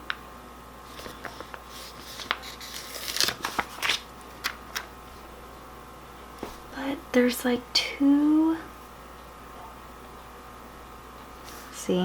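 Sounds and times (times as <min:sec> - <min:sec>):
paper rustling: 0:00.9 - 0:04.9.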